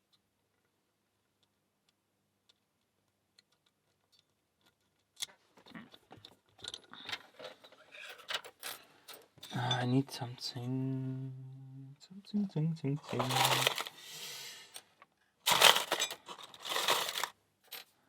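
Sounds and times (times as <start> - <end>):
lock picks clicking and rattling: 3.4 - 6.9.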